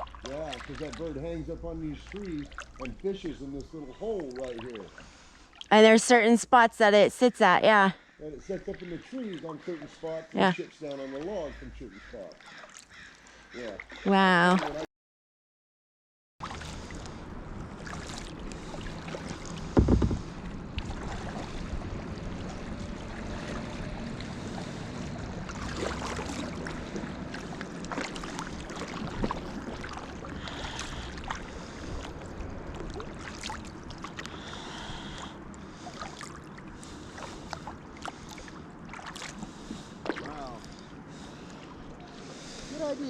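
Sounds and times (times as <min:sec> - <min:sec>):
paddle splashing in water: 0:00.0 - 0:01.2, 0:01.9 - 0:05.7, 0:12.1 - 0:14.8, 0:16.4 - 0:43.0
water lapping against hull: 0:00.0 - 0:06.1, 0:08.0 - 0:14.9, 0:16.4 - 0:43.0
loud knock: 0:19.8 - 0:20.3.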